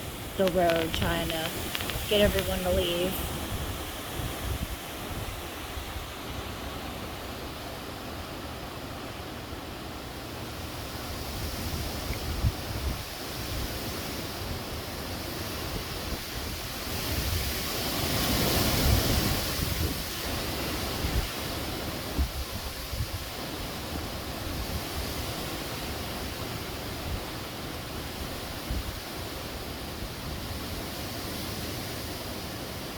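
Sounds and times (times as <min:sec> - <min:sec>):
wind buffeting microphone: 0:00.4 - 0:06.2, 0:11.2 - 0:14.7.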